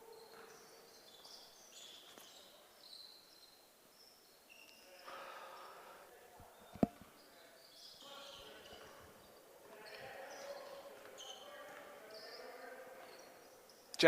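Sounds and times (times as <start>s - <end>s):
sneakers squeaking on hardwood: 0.0s - 5.3s, 6.4s - 13.9s
murmur of voices: 4.8s - 14.0s.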